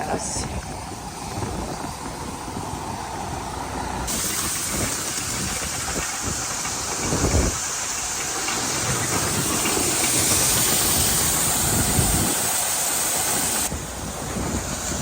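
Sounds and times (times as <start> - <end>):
corn pouring hiss: 3.5 - 15.0.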